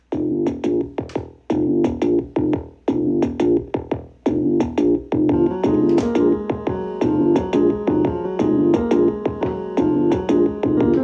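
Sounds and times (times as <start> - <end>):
drum machine beat: 0.0 - 11.0
synthesizer playing: 5.3 - 11.0.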